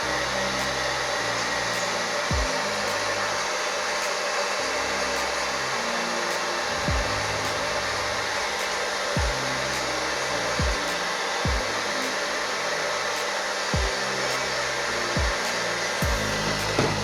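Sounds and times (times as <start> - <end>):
hair dryer blowing: 0.0 - 17.0
background music bass: 4.6 - 12.1, 13.7 - 17.0.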